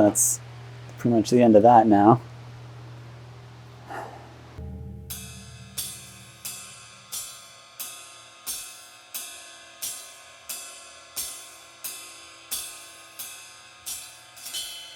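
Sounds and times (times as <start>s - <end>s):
sustained instrument notes: 4.6s - 7.3s
cymbal strokes ringing: 4.6s - 14.9s.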